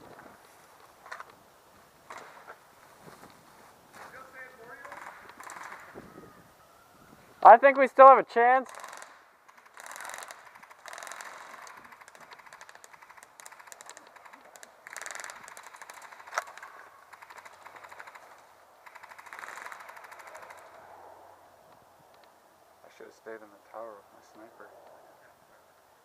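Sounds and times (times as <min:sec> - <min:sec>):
airsoft guns firing full-auto: 0:04.8 - 0:06.0, 0:08.6 - 0:20.9.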